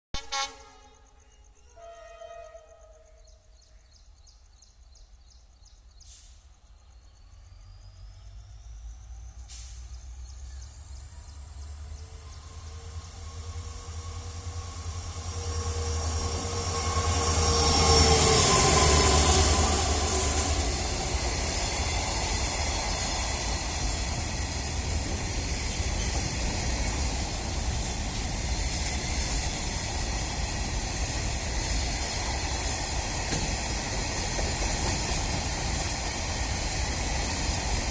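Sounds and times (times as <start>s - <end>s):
diesel locomotive engine rumble: 5.9s - 37.9s.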